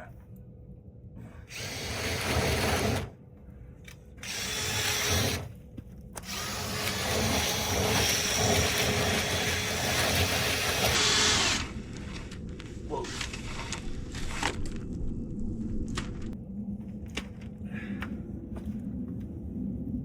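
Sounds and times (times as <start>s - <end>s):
power drill spinning vent brush: 1.5s - 3.1s, 4.2s - 5.5s, 6.2s - 12.4s.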